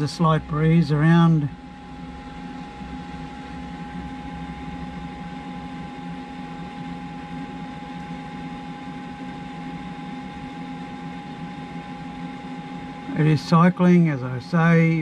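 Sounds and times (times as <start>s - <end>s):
fridge compressor whine: 0.0s - 15.0s
small cooling fan: 0.0s - 15.0s.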